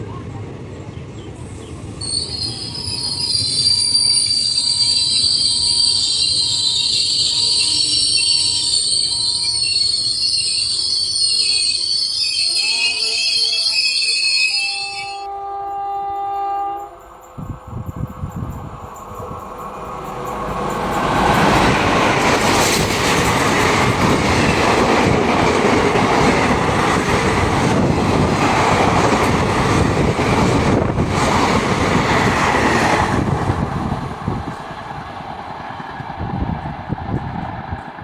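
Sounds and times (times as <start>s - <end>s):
train wheels clattering: 17.8s - 38.0s.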